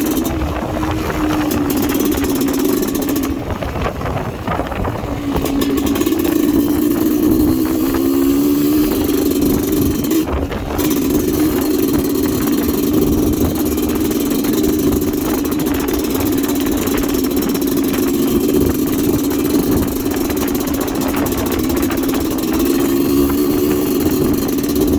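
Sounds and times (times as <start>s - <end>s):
motorcycle engine running: 0.0s - 24.9s.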